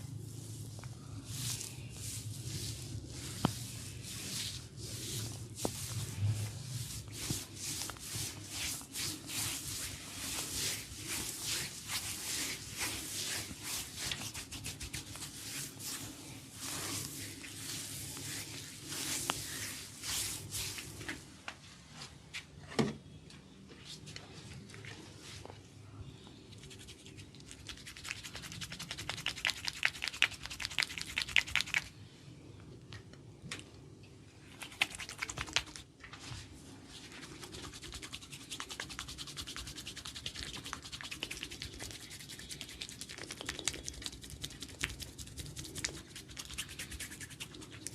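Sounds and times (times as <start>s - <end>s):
fingers scratching scalp and hair: 1.4s - 20.9s, 37.2s - 47.9s.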